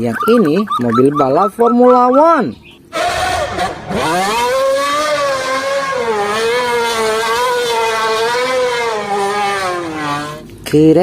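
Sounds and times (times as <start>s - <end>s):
racing car engine high revs: 2.9s - 10.5s.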